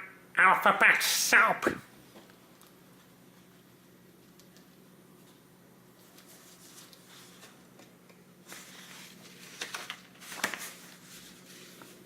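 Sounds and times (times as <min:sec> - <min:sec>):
steady low hum: 0:00.0 - 0:12.0
rustling handling noises: 0:04.2 - 0:12.0.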